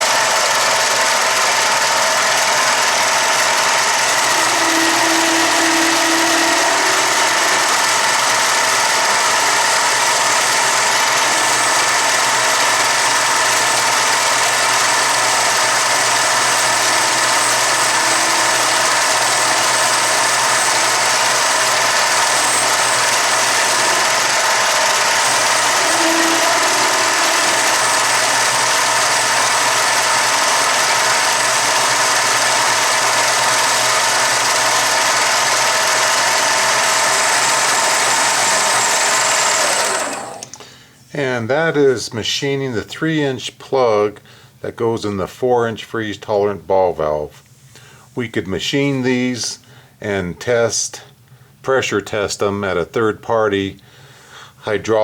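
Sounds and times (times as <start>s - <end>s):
machine tool running: 0.0s - 40.6s
brief higher tone: 4.2s - 8.6s.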